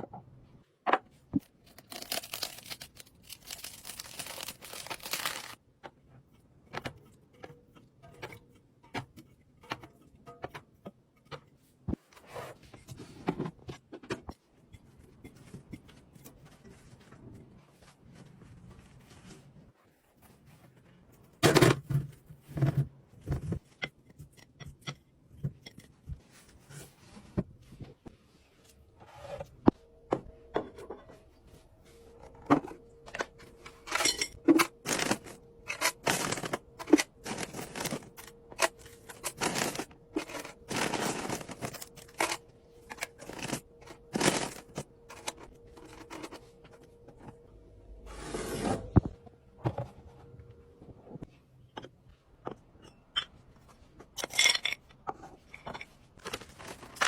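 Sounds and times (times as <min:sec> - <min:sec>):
packaging torn and crinkled: 0:01.6 - 0:05.6.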